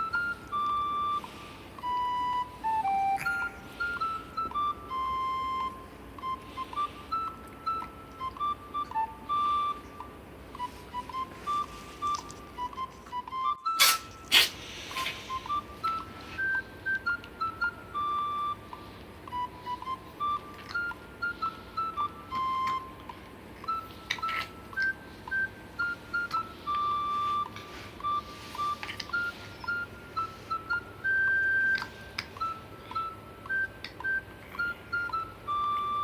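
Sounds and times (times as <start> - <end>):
short sharp noise bursts: 13.7 - 15.4.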